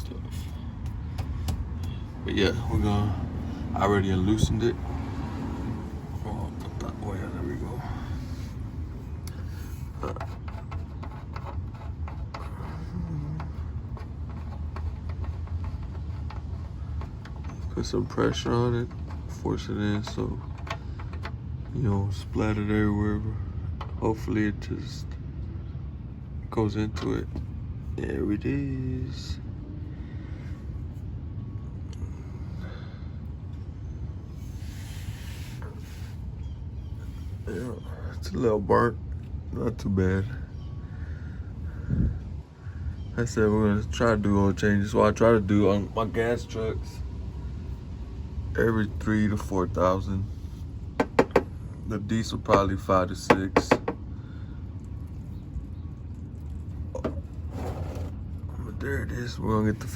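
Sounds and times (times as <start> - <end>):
low steady hum: 0.0 - 59.9.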